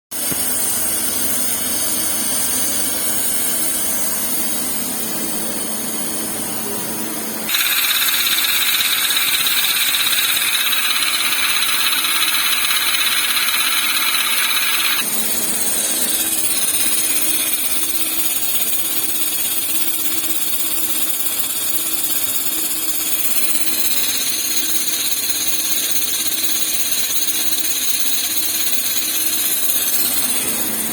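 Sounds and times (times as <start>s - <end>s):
machine hum with constant tones: 7.3s - 30.9s
harsh grinding noise: 7.5s - 20.2s.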